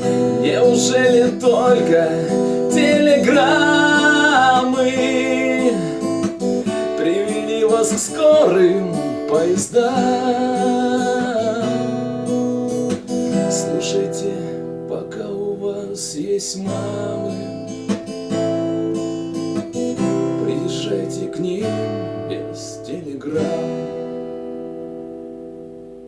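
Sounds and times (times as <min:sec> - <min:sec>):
held notes: 0:00.0 - 0:15.8
acoustic guitar strumming chords: 0:00.0 - 0:26.0.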